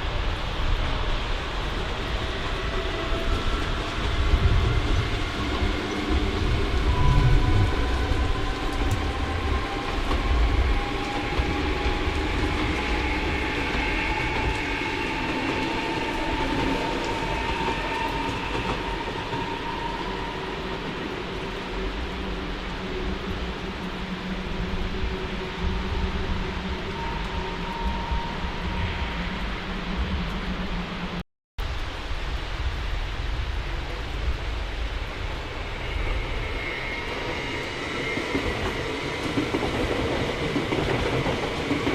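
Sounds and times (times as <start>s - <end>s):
train wheel clatter: 0.0s - 21.6s, 35.2s - 41.9s
train rumbling: 0.0s - 41.9s
whining tones drifting in pitch: 1.1s - 31.2s.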